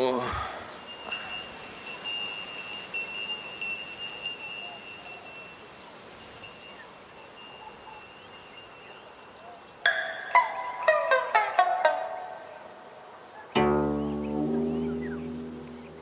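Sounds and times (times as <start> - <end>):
faint background hiss: 8.3 - 16.0.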